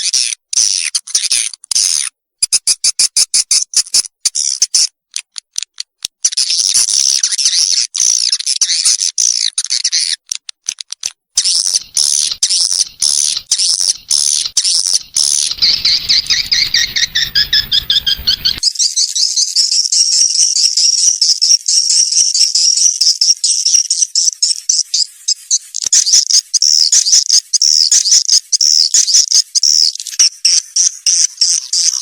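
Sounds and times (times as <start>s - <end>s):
swiftlets twittering chirps: 11.4s - 19.8s.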